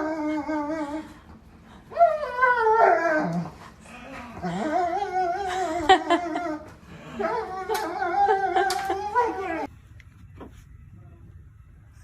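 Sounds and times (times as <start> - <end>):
dog howling and whining: 0.0 - 1.1, 1.9 - 9.7.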